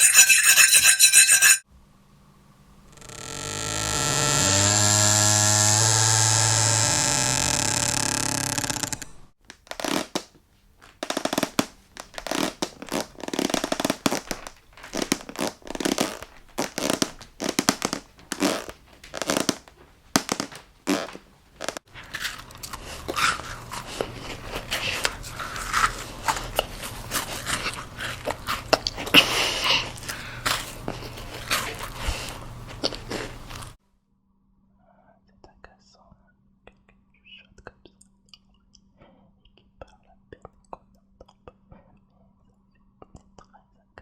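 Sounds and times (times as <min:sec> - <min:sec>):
wooden floorboards creaking: 0:03.0 - 0:22.5
person chewing and crunching: 0:22.0 - 0:29.2.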